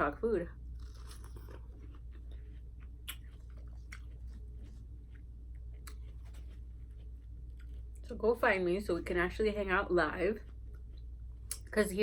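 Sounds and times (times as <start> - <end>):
low steady hum: 0.0 - 12.0
person chewing food: 0.6 - 8.1, 10.4 - 11.6.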